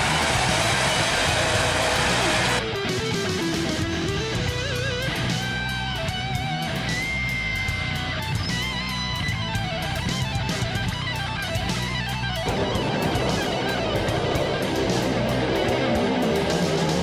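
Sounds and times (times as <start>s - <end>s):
electric guitar lead melody: 0.0s - 17.0s
steady beat: 12.5s - 17.0s.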